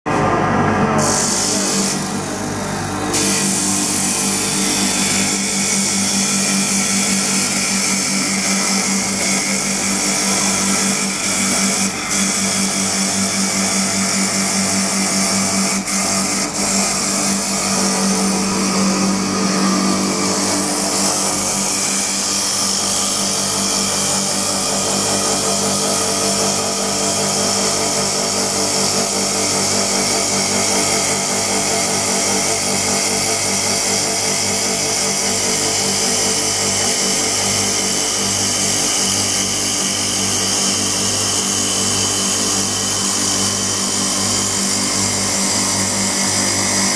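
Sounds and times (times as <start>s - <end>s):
lathe motor hum: 0.1s - 46.9s
high hiss of wood cutting: 1.0s - 2.3s, 3.1s - 27.0s.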